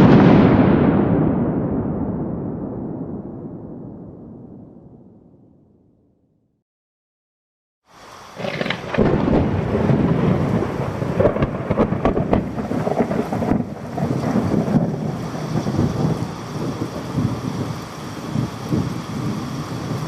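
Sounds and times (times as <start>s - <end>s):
sharp thunder cracks: 0.0s - 5.3s, 8.4s - 20.0s
thunder rumbling: 0.0s - 5.8s, 8.4s - 20.0s
steady rain: 7.9s - 20.0s.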